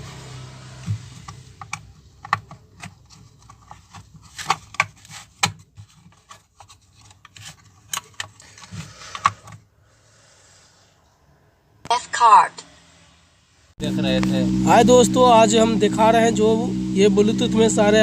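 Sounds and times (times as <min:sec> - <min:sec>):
rubbing and scraping: 0:00.8 - 0:09.6.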